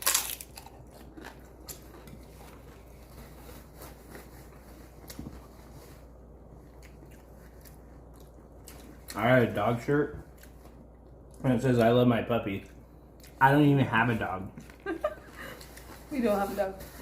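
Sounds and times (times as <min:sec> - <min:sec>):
sharp crunch of biting: 0:00.0 - 0:02.4
quiet chewing with clicks: 0:06.6 - 0:09.3, 0:10.2 - 0:13.4.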